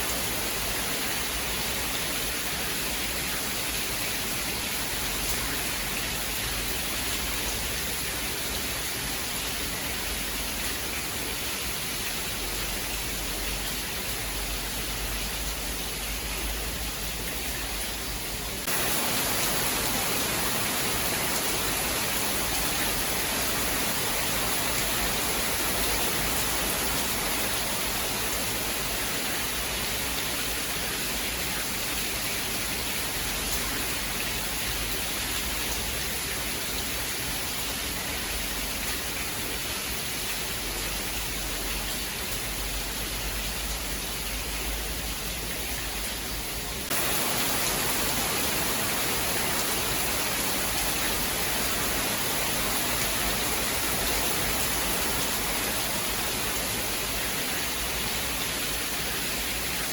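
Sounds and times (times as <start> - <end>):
heavy rain: 0.0 - 59.9.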